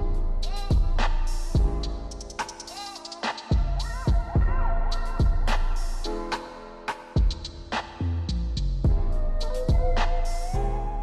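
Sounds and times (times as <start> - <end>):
heavy bass line: 0.0 - 2.3, 3.5 - 6.2, 7.2 - 11.0
drum beat with kick hits: 3.2 - 4.6, 5.2 - 5.6, 7.2 - 7.9.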